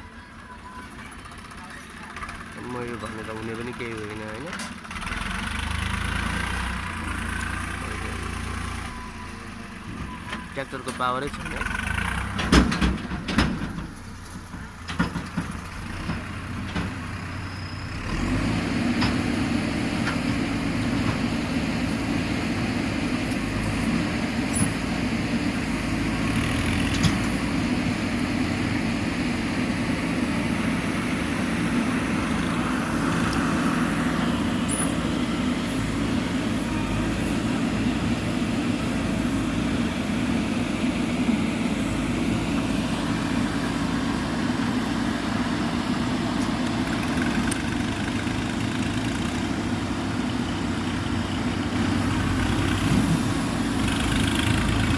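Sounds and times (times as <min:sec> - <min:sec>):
heavy vehicle engine running: 0:00.0 - 0:54.9
knocks and clatters: 0:12.3 - 0:17.0.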